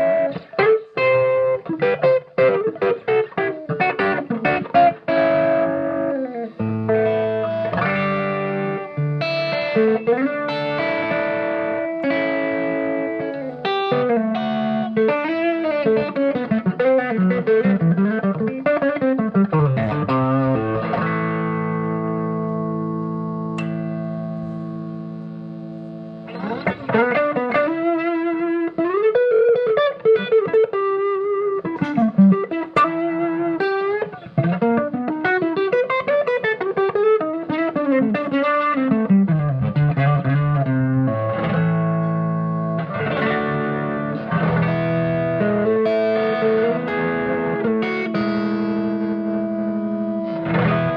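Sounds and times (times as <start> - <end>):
electric guitar playing: 0.0 - 50.9.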